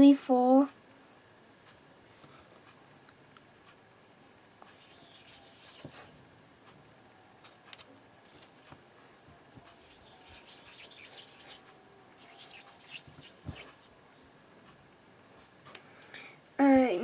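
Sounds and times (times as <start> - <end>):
hands handling modelling clay: 4.7 - 6.1, 9.6 - 13.8.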